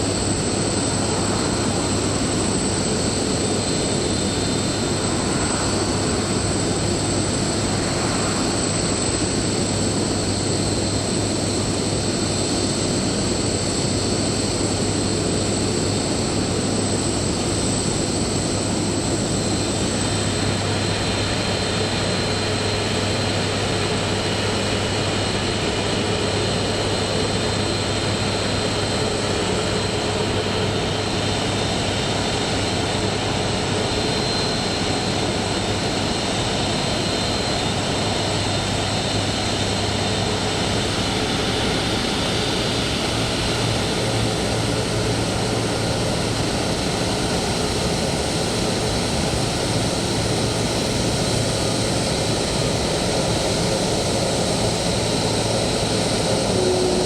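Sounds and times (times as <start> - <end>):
jet engines running: 0.0 - 57.0
high whine: 39.6 - 57.0.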